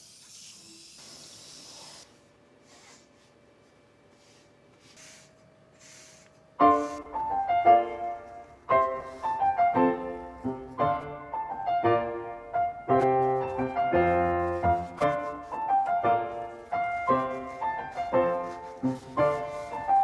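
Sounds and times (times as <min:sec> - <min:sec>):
faint short hisses: 0:04.2 - 0:07.1
piano music: 0:06.6 - 0:20.0.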